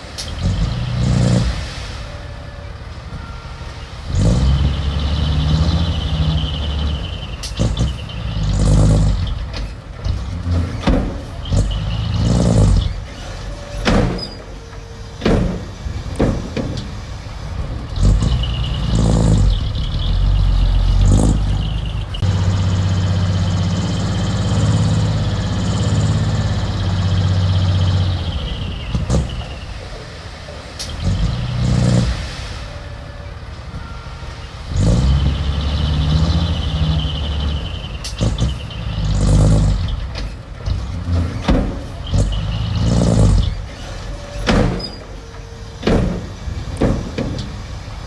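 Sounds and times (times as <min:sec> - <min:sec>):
diesel engine surging: 0:00.0 - 0:48.0
metal knocks and clanks: 0:07.4 - 0:19.6, 0:38.0 - 0:47.7.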